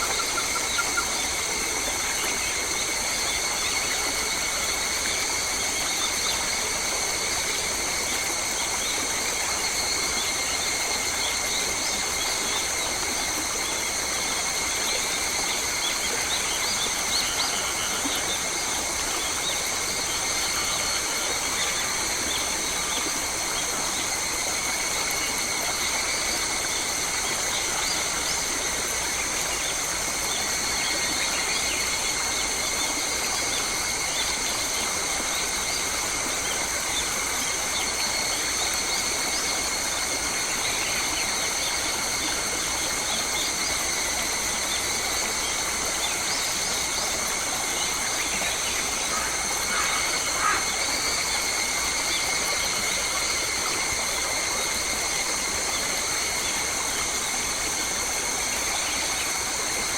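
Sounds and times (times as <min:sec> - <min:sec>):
running water hiss: 0:00.0 - 0:59.9
bird calls: 0:47.8 - 0:53.0.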